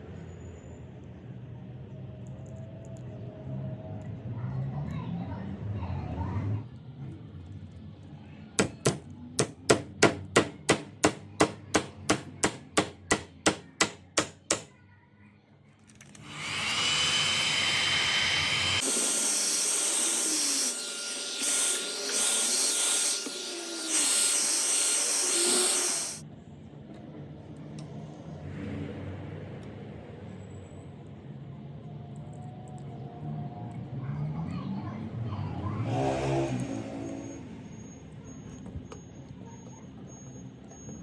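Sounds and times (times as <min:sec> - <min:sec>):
sharp knocks: 0:08.6 - 0:14.7.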